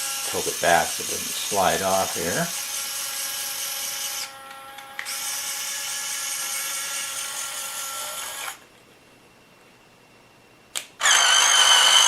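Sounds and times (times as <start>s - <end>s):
small electric motors whining: 0.0s - 8.6s, 11.0s - 12.0s.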